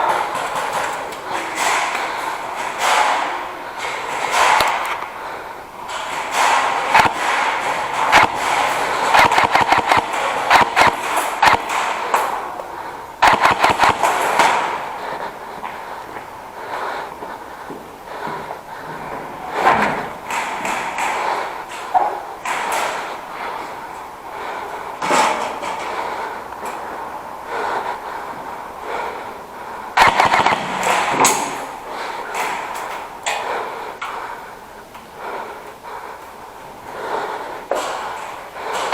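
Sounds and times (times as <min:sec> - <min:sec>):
airsoft guns firing: 0:00.0 - 0:05.1, 0:05.9 - 0:12.6, 0:13.2 - 0:15.3, 0:30.0 - 0:33.0.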